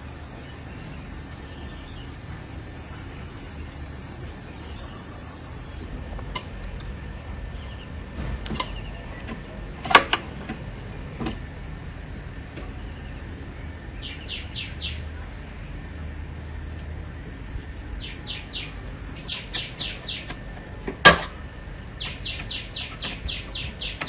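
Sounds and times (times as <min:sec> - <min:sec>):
sharp clicks and knocks: 0:05.8 - 0:12.8.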